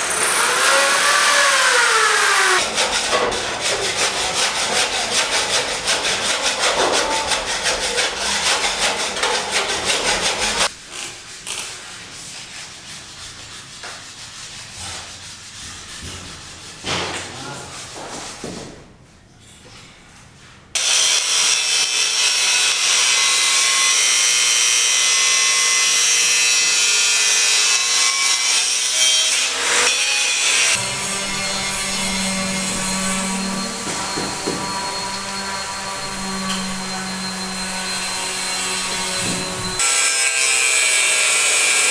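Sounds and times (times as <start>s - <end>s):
fast rasping strokes: 0.0s - 10.7s
knocks: 33.7s - 35.1s, 39.1s - 39.8s.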